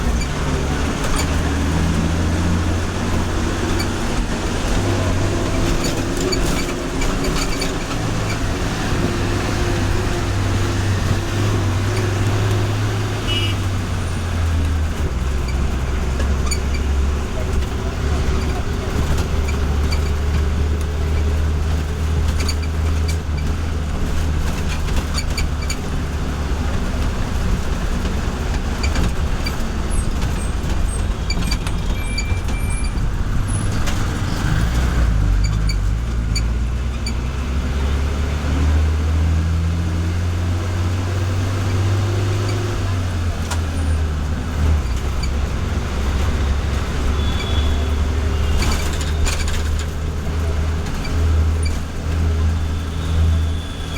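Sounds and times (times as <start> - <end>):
bus engine drone: 0.0 - 53.9.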